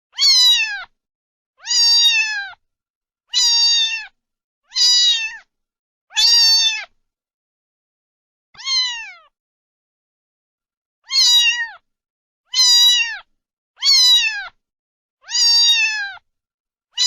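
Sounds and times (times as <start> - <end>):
cat meowing: 0.1 - 1.0, 1.6 - 2.6, 3.3 - 5.5, 6.1 - 7.0, 8.6 - 9.4, 11.0 - 11.8, 12.5 - 14.6, 15.2 - 16.3.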